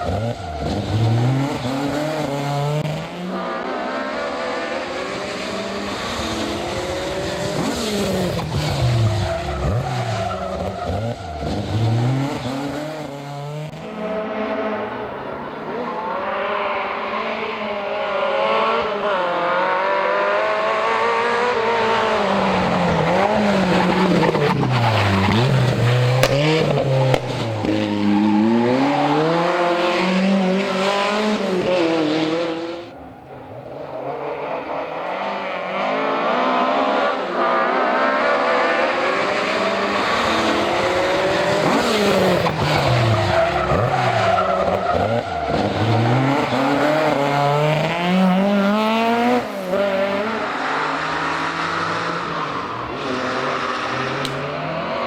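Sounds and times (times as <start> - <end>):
rally car engines revving: 0.0 - 55.0.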